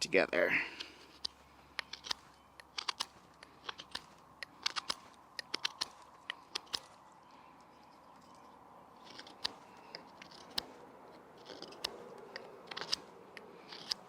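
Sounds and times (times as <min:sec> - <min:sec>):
knife whittling wood: 0:09.0 - 0:10.8, 0:11.4 - 0:14.0.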